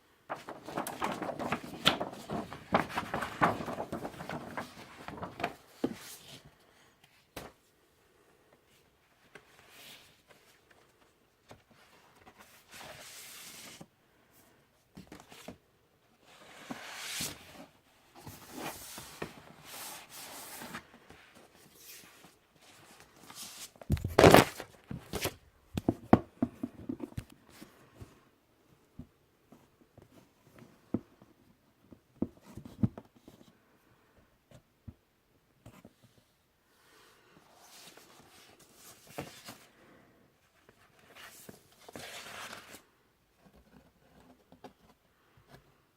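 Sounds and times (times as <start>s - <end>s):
paper and cardboard rustling: 0.3s - 6.5s, 16.2s - 28.1s, 37.6s - 39.9s, 40.5s - 45.6s.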